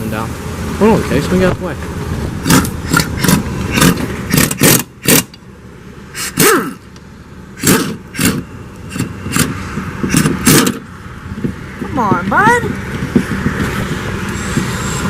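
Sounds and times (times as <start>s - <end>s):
tools tightening metal bolts: 2.4s - 5.4s.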